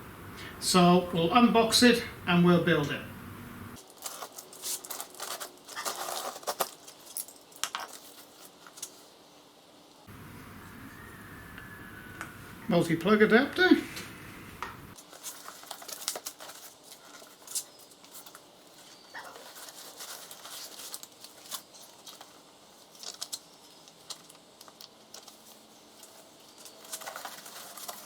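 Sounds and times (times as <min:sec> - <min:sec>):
plastic packaging crinkling: 0:03.8 - 0:09.2, 0:14.9 - 0:28.0.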